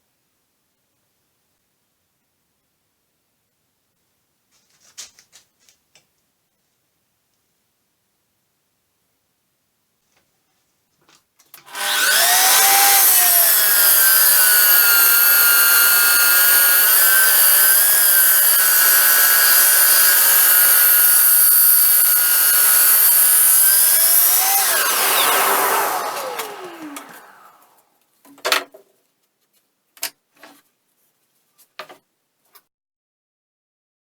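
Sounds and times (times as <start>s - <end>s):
woodworking power tool whining: 11.6s - 27.8s.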